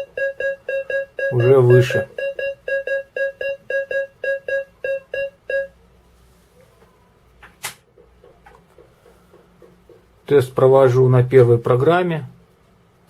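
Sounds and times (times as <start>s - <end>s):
metal detector beeping: 0.0s - 5.7s.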